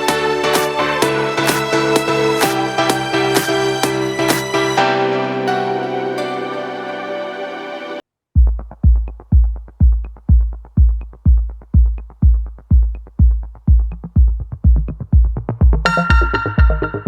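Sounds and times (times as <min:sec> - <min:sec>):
heavy kick-drum beat: 0:00.0 - 0:04.8, 0:08.4 - 0:17.0
bright synth melody: 0:00.0 - 0:08.0, 0:15.9 - 0:17.0.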